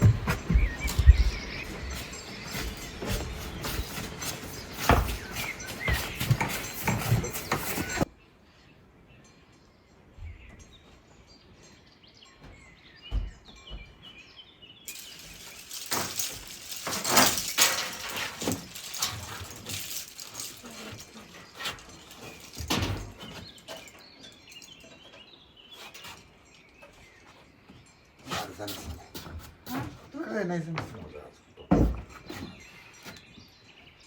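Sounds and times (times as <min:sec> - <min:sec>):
small birds chirping: 0:00.0 - 0:34.0
loud hissing rustling noise: 0:00.4 - 0:08.1, 0:14.9 - 0:24.0.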